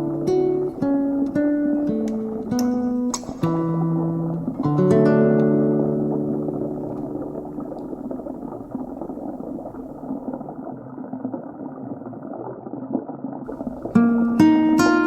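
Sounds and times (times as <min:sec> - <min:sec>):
guitar notes: 0:00.0 - 0:08.6, 0:13.6 - 0:15.0
aquarium water bubbling: 0:00.0 - 0:15.0.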